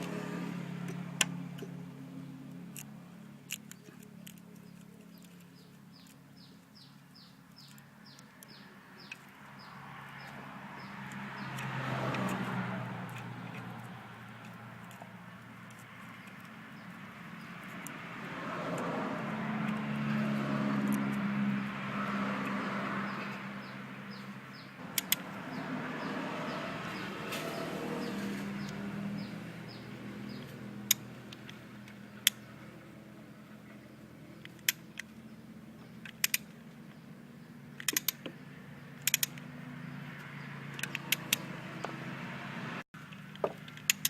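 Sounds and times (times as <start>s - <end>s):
engine running with low hum: 0.0s - 44.0s.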